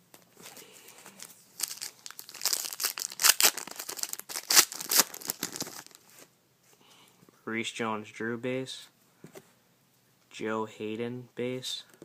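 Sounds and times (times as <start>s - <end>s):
wrapper being torn and crinkled: 1.2s - 6.0s.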